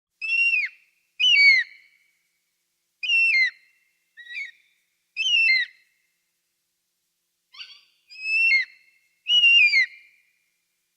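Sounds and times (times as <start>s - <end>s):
eagle calling: 0.2s - 1.9s, 3.0s - 3.6s, 4.2s - 5.8s, 7.5s - 10.1s.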